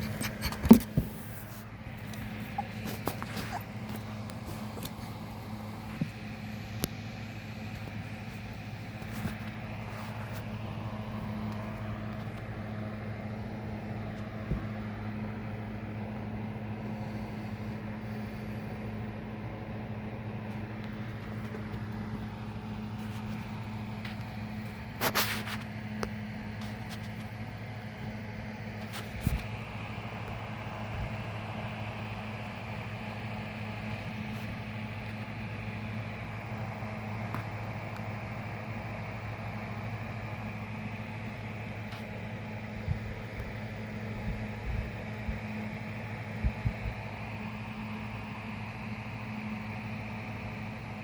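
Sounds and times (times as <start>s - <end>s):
low mechanical hum: 0.0s - 51.0s.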